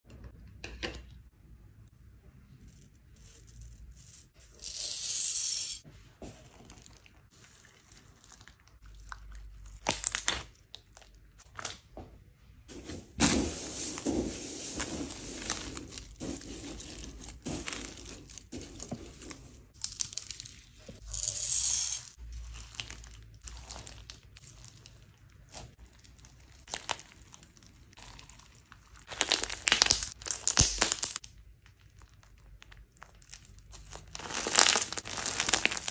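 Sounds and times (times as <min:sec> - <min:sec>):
slime crackling and popping: 0:09.8 - 0:11.8, 0:22.4 - 0:35.9.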